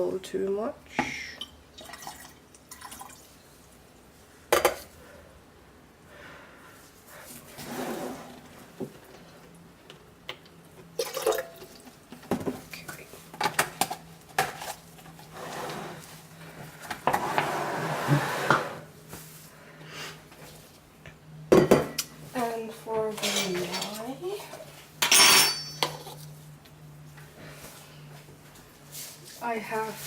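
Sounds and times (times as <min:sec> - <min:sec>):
water being poured: 0:01.8 - 0:03.4
kitchen containers clinking: 0:23.1 - 0:24.1, 0:25.0 - 0:26.2.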